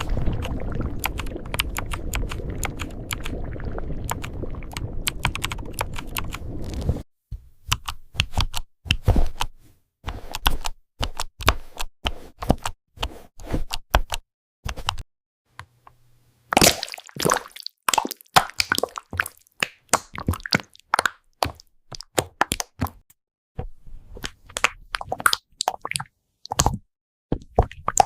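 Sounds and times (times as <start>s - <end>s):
dense low noise: 0.0s - 7.0s.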